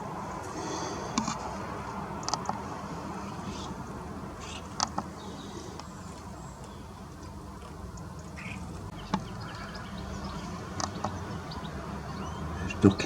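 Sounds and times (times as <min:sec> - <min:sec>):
birds chirping: 0:00.0 - 0:13.0
low background noise: 0:00.0 - 0:13.0
sharp clicks: 0:02.2 - 0:02.6, 0:10.8 - 0:11.2.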